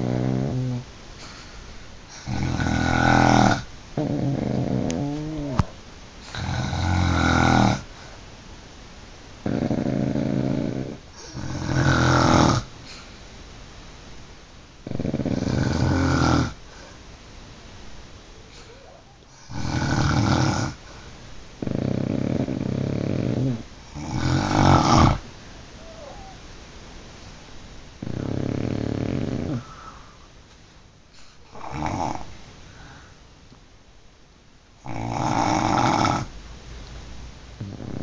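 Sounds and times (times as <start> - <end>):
loud snoring: 0.0 - 0.9, 2.1 - 5.7, 6.3 - 7.9, 9.4 - 12.7, 14.8 - 16.6, 19.4 - 20.8, 21.6 - 25.2, 28.0 - 29.9, 31.5 - 32.3, 34.8 - 36.3, 37.6 - 38.0.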